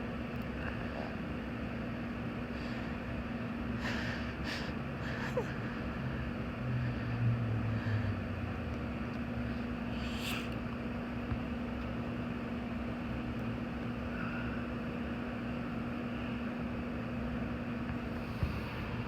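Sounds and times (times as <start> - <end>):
steady low hum: 0.0 - 19.0
congested sniffs and breaths: 9.4 - 10.6.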